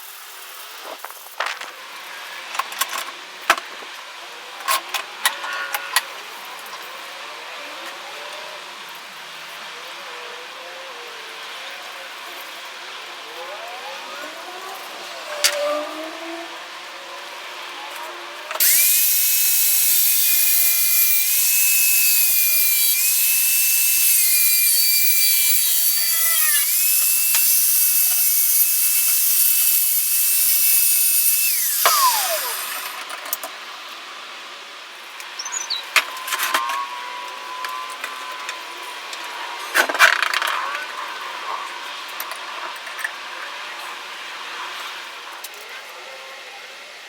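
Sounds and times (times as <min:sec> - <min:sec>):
power saw whining: 0:18.5 - 0:33.2.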